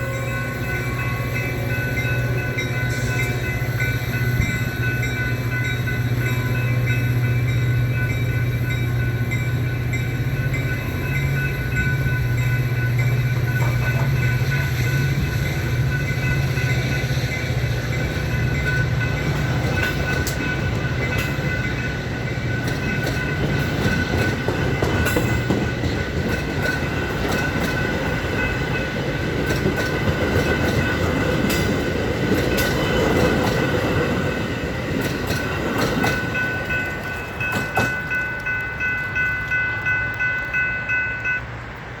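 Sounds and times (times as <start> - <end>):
train wheels rumbling on rails: 0.0 - 42.0
clacks over rail joints: 18.0 - 40.6.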